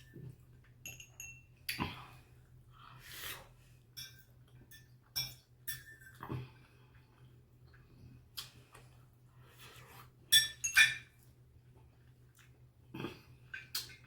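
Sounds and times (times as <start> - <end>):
utensil clinking against dish: 0.8 - 1.5.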